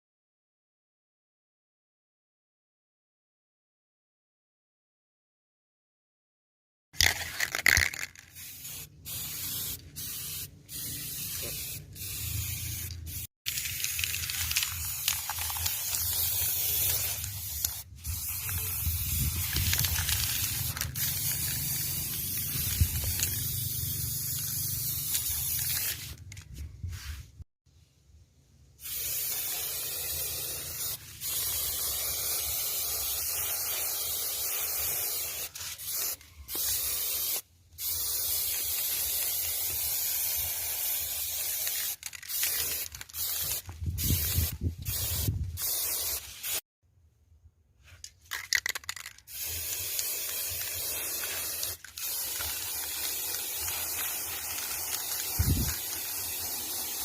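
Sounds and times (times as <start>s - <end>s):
spray hissing: 8.4s - 26.3s, 28.8s - 46.6s, 49.3s - 57.0s.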